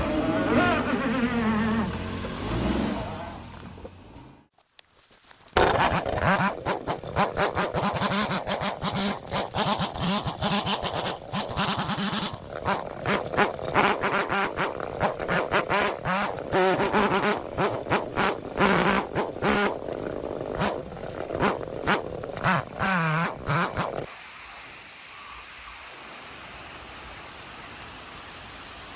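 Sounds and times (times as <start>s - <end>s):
chainsaw revving while cutting: 0.0s - 3.2s, 5.6s - 24.1s.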